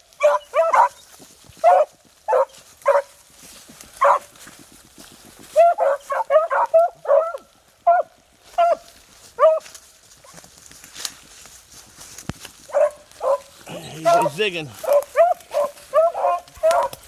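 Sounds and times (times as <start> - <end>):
hounds baying and yelping: 0.0 - 3.2, 3.9 - 4.3, 5.4 - 10.4, 12.6 - 17.0.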